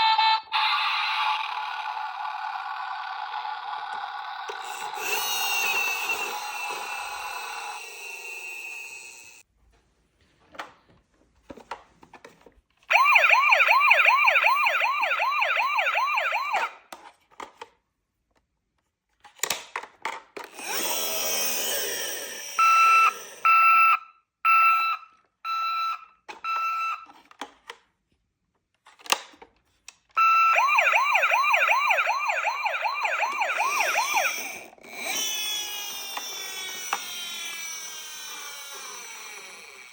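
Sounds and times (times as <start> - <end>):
toy warbling siren: 0.0 - 9.4, 12.9 - 16.8, 20.7 - 27.1, 30.2 - 39.9.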